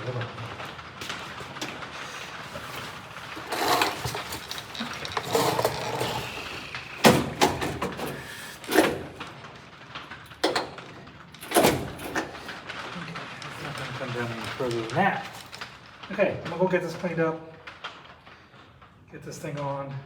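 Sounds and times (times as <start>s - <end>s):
metal scraping and rubbing: 2.0s - 9.2s.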